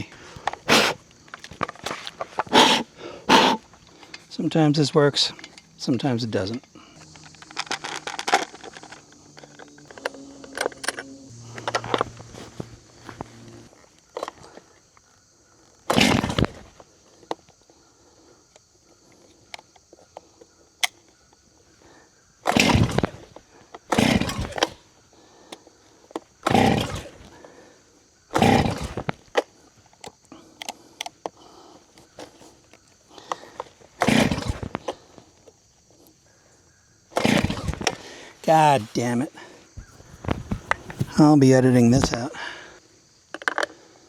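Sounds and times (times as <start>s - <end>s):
handling clicks and rattles: 0.0s - 2.7s, 5.1s - 5.7s, 6.4s - 14.6s
chainsaw pull-start cranking: 6.5s - 14.6s, 15.8s - 17.4s, 22.4s - 24.9s, 26.1s - 27.4s, 28.3s - 31.2s, 33.2s - 35.1s, 37.1s - 39.2s.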